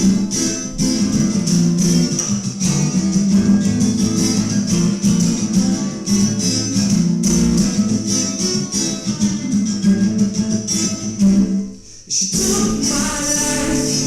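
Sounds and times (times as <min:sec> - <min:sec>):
acoustic guitar blues strumming: 0:00.0 - 0:14.0.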